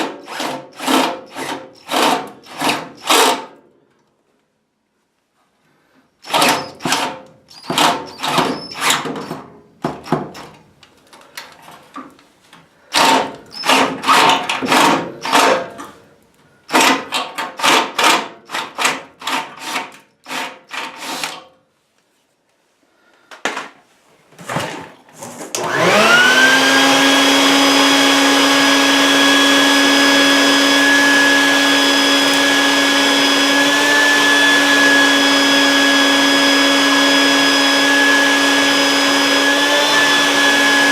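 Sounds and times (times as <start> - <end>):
rasping tool on sheet metal: 6.3 - 9.3, 16.7 - 21.5
electric motor whine: 25.6 - 40.9.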